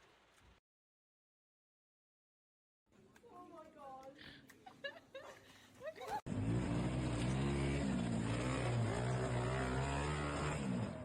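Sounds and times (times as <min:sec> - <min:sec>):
vehicle engine revving: 0:06.3 - 0:11.0.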